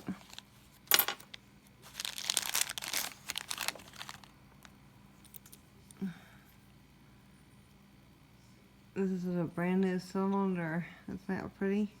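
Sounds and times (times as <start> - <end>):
packaging crinkling: 0.0 - 5.6.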